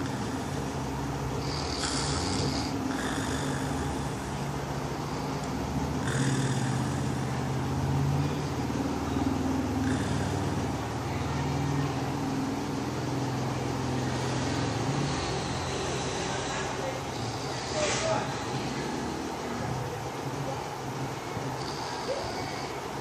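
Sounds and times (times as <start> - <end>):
breathy hiss of air: 0.0 - 7.4, 14.1 - 18.9
person snoring: 1.4 - 5.3, 6.0 - 7.3, 9.8 - 10.9, 21.6 - 22.8.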